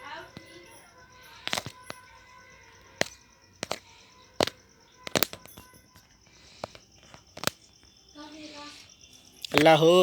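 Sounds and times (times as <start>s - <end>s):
sharp short clicks: 2.8s - 7.8s.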